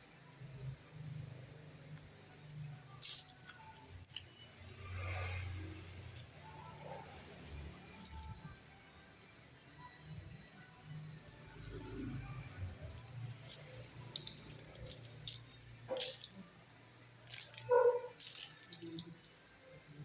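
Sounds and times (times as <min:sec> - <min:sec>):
small items clicking and rattling: 0:02.4 - 0:08.5, 0:10.1 - 0:19.6.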